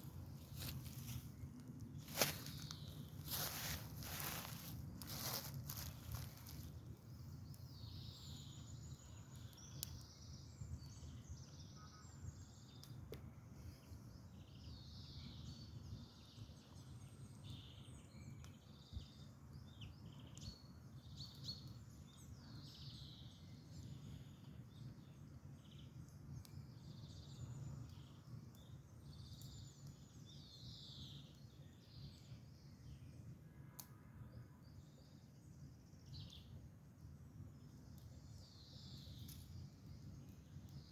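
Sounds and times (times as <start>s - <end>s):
wood fire crackling: 0.0s - 11.0s, 36.3s - 40.9s
songbirds singing: 0.0s - 40.9s.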